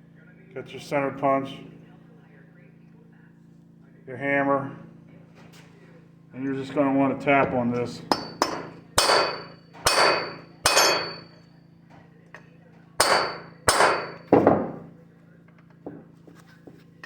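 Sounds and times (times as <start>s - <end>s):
hammer striking metal punch: 8.0s - 11.4s, 13.0s - 14.9s.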